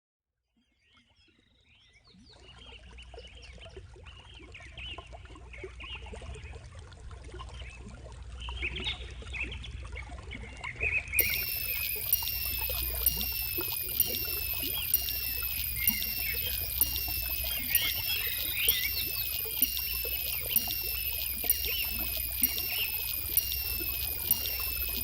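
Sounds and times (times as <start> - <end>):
birds chirping: 11.2 - 25.0
trickling water: 11.2 - 25.0.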